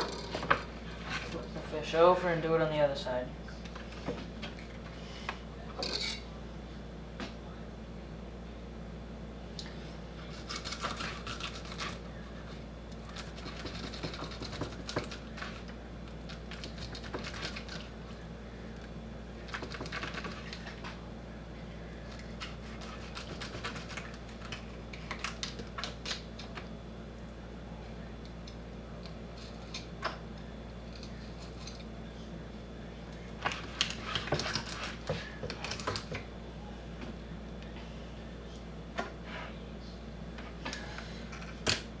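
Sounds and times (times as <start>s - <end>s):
knife cutting and scraping fish: 10.2s - 12.0s, 13.0s - 17.9s, 22.1s - 26.2s, 33.4s - 35.9s.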